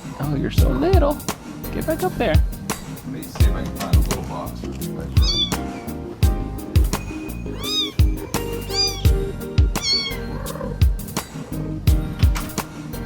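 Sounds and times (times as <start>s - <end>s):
background music with beat: 0.0s - 13.0s
kitten mewing: 5.2s - 5.6s, 7.5s - 10.8s.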